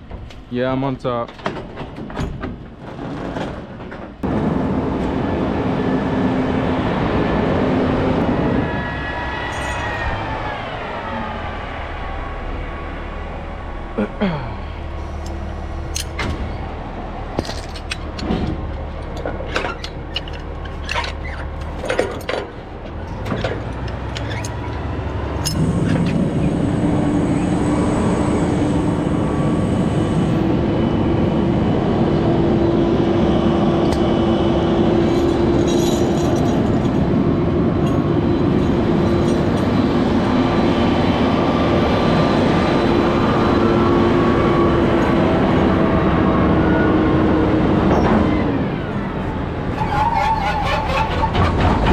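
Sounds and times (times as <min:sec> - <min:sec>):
sharp knocks and clanks: 0:01.2 - 0:04.2, 0:50.2 - 0:51.9
heavy engine running: 0:02.6 - 0:51.9.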